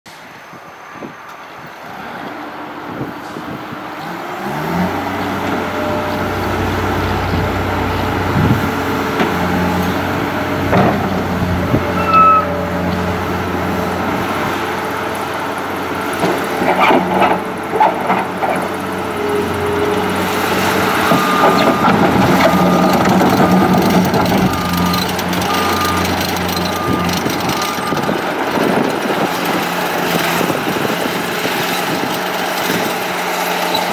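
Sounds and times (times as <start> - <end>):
diesel engine running: 1.8 - 33.9
backup alarm beeping: 20.8 - 28.2.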